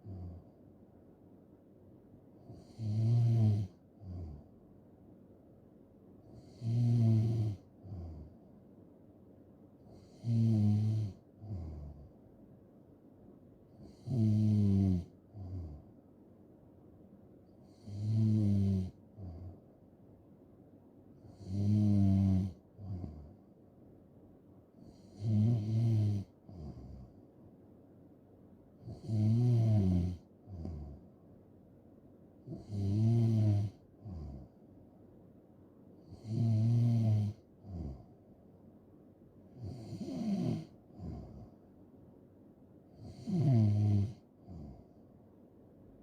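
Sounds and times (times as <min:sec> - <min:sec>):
person snoring: 0:02.4 - 0:04.4, 0:06.3 - 0:08.3, 0:09.9 - 0:12.1, 0:13.8 - 0:15.8, 0:17.6 - 0:19.6, 0:21.2 - 0:23.4, 0:24.8 - 0:27.1, 0:28.8 - 0:31.0, 0:32.5 - 0:34.5, 0:36.1 - 0:38.0, 0:39.6 - 0:41.5, 0:43.0 - 0:44.9.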